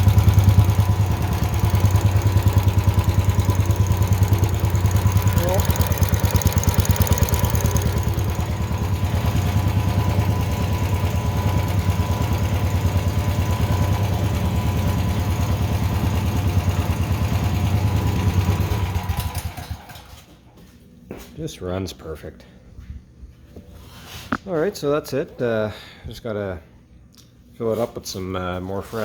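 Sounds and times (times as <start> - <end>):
generator engine idling: 0.0 - 20.2.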